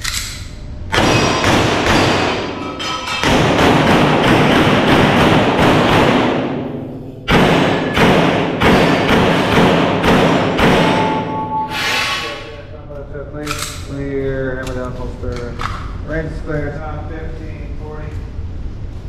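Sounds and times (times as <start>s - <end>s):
pistol shots: 0.9s - 2.6s, 3.2s - 11.4s.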